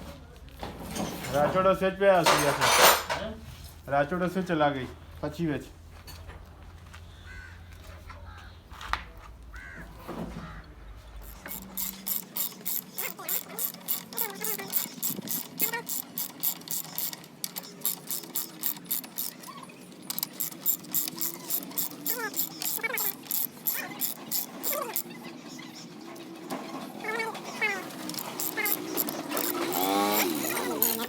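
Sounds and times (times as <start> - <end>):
ratchet wrench clicking: 11.2 - 25.2, 27.1 - 31.0.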